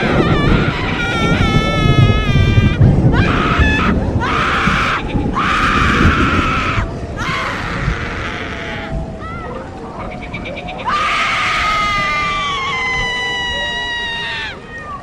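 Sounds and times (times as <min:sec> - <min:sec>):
person screaming: 0:00.0 - 0:09.0, 0:10.9 - 0:14.6
steady low rumble: 0:00.0 - 0:10.2.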